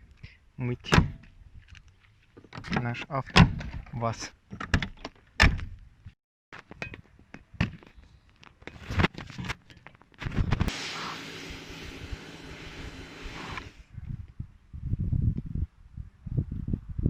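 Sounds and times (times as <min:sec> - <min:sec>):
pressure washer spraying: 0:10.7 - 0:13.8.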